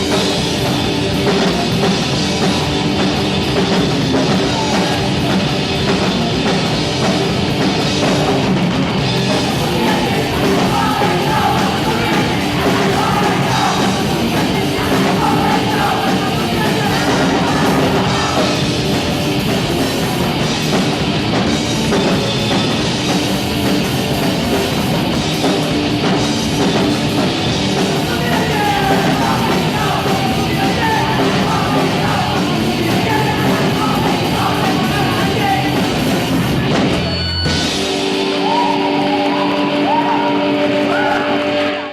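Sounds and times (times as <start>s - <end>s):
punk rock band playing: 0.0s - 41.9s
shouted vocals: 9.4s - 18.7s, 28.0s - 36.1s, 38.2s - 41.9s.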